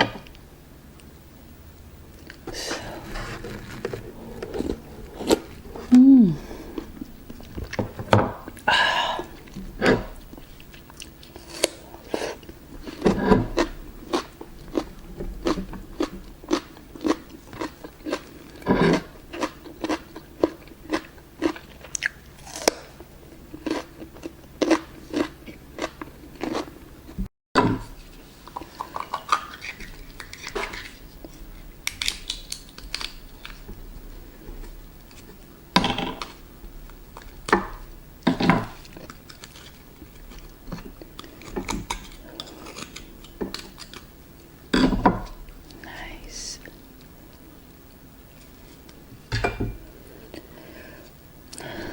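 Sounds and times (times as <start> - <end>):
chewing and crunching mouth sounds: 2.1 - 7.9, 8.5 - 27.2, 28.3 - 35.5, 36.1 - 45.9.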